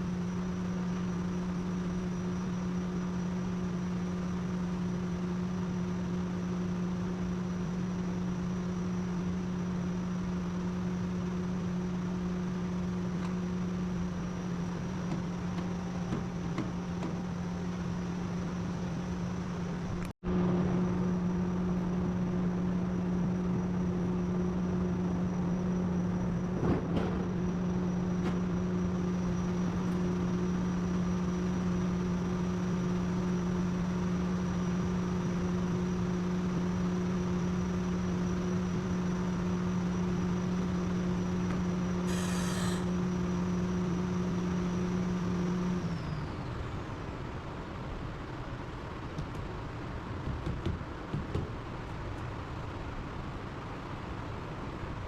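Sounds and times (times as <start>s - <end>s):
small motor running: 41.1s - 43.8s.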